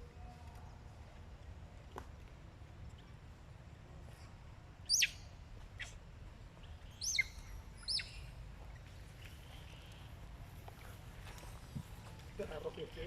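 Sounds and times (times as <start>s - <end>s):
baby monkey squealing: 7.0s - 8.2s.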